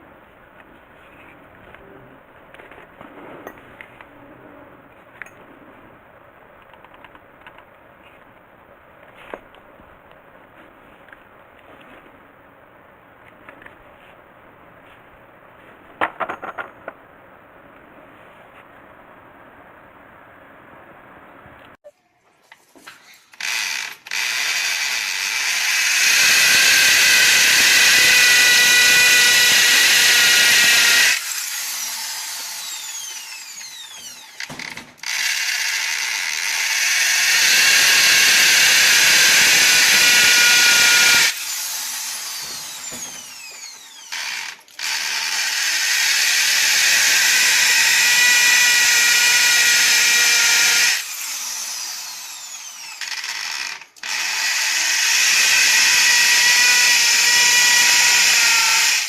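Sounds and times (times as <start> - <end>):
drill spinning down: 23.2 - 59.0
hammer drill motor whine: 23.4 - 59.0.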